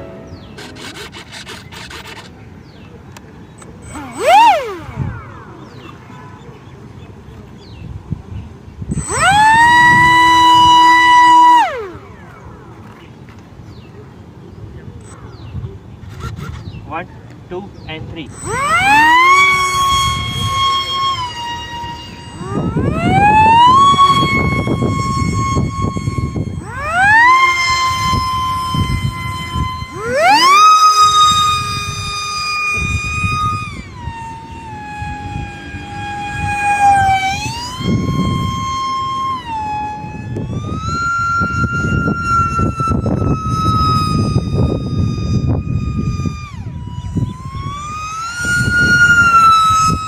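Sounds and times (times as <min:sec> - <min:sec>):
rough low noise: 0:00.0 - 0:15.9
electric motor propeller whine: 0:00.0 - 0:50.0.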